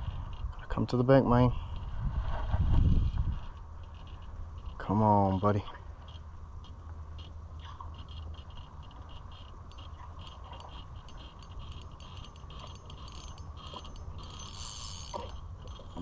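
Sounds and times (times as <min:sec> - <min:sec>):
fishing reel clicking: 0:08.0 - 0:16.0.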